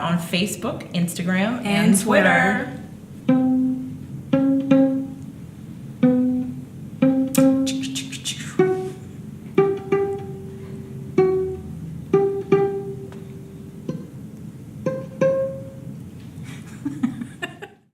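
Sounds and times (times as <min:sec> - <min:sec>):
violin plucked pizzicato: 0:03.2 - 0:05.3, 0:06.0 - 0:16.0.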